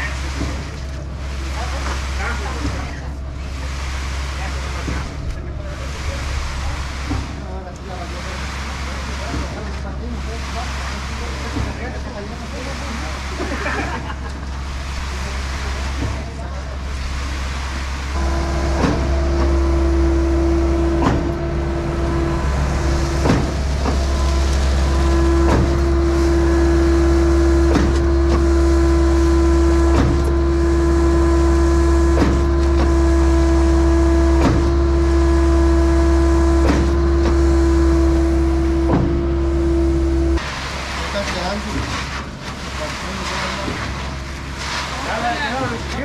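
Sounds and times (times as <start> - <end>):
low engine rumble: 0.0 - 46.0
steady pump whine: 0.0 - 46.0
sharp pump knock: 21.0 - 21.4, 23.2 - 24.1, 29.9 - 30.4, 38.8 - 39.3.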